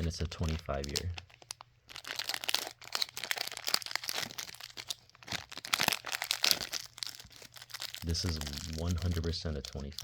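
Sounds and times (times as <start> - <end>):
packet crinkling and tearing: 0.0 - 10.0.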